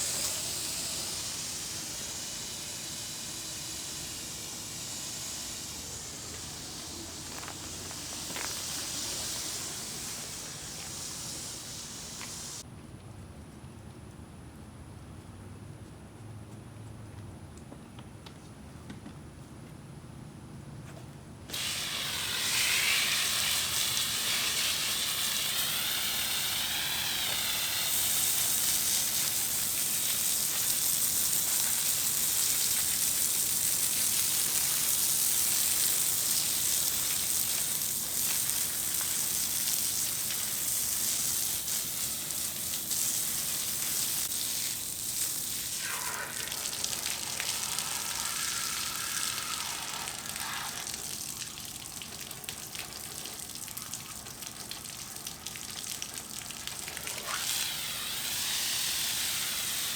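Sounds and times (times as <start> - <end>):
garden sprayer hissing: 0.0 - 12.6, 21.5 - 59.9.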